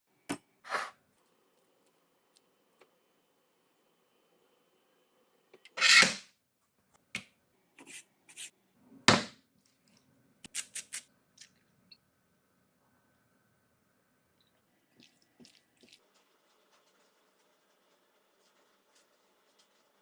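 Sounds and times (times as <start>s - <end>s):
kitchen knocks and scrapes: 5.8s - 6.3s, 9.1s - 9.4s.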